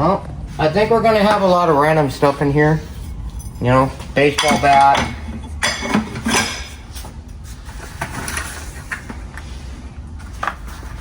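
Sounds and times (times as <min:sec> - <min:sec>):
metal objects clanking: 0:02.9 - 0:07.1.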